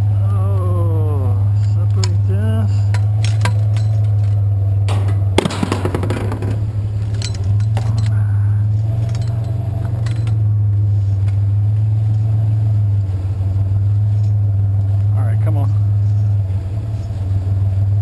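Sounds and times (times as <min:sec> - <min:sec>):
low engine hum: 0:00.0 - 0:18.0
scrap metal rattling and clanking: 0:02.0 - 0:08.2, 0:08.9 - 0:10.4.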